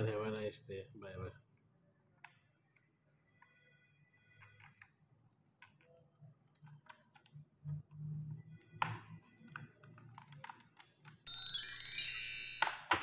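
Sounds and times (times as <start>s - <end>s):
plastic keys clicking and tapping: 9.5s - 11.3s.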